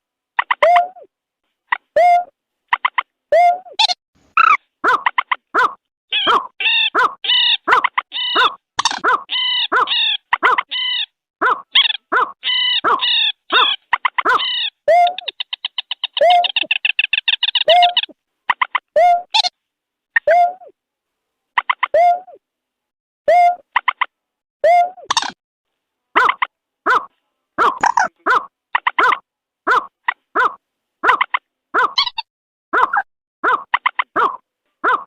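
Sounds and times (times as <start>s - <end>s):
fast chattering bird trill: 3.8s - 19.5s, 26.2s - 35.0s.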